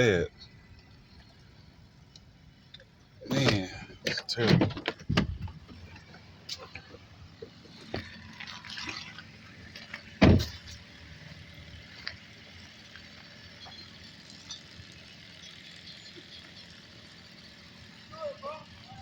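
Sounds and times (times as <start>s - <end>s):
heavy thump: 4.5s - 5.6s, 10.2s - 10.6s.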